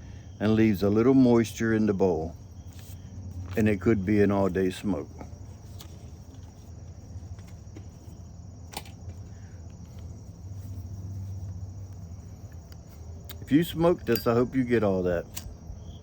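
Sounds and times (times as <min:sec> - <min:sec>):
insect chirring: 0:00.0 - 0:16.0
steady low hum: 0:00.0 - 0:16.0
sharp click: 0:15.3 - 0:15.6.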